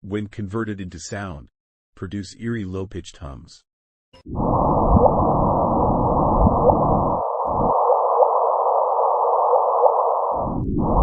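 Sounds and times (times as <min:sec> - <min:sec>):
deep rumble: 0:04.3 - 0:11.0.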